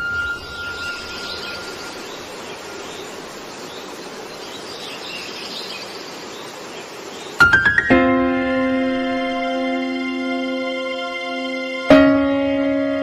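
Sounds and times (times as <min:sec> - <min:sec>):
faint high chirps: 0:00.0 - 0:03.3
steady hiss: 0:00.0 - 0:13.0.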